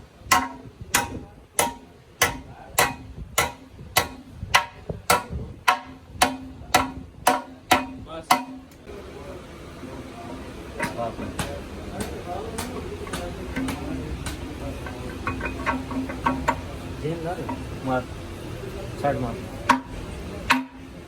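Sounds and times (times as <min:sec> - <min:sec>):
hammer striking metal: 0:00.3 - 0:08.8, 0:10.8 - 0:16.7, 0:19.7 - 0:20.8.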